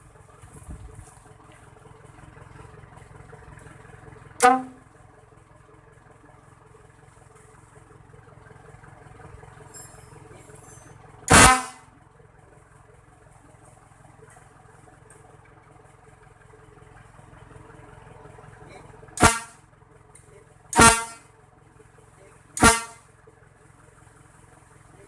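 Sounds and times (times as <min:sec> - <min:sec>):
steady low hum: 0:00.0 - 0:25.0
electric horn blasts: 0:04.4 - 0:04.9, 0:11.3 - 0:11.9, 0:19.2 - 0:19.6, 0:20.7 - 0:21.3, 0:22.6 - 0:23.0.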